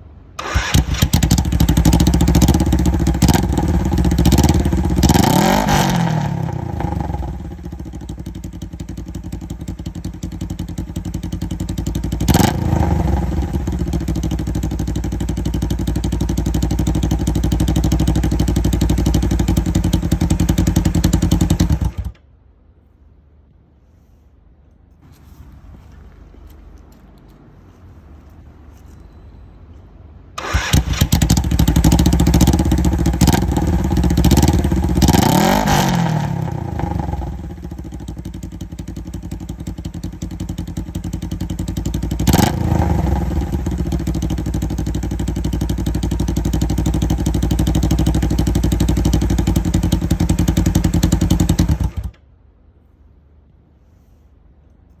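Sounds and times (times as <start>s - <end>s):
motorcycle engine revving and idling: 0.4s - 22.2s, 30.4s - 52.2s.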